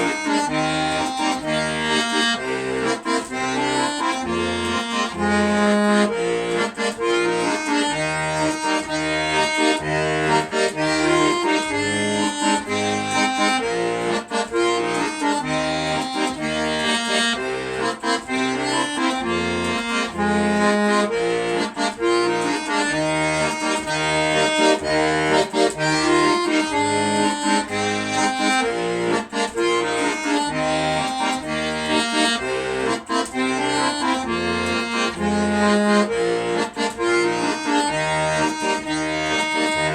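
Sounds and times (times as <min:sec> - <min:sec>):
accordion playing lively tune: 0:00.0 - 0:39.9.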